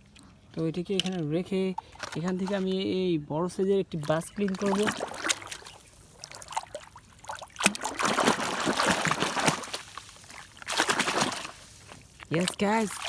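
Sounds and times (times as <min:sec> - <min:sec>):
water trickling and splashing: 0:03.5 - 0:13.0.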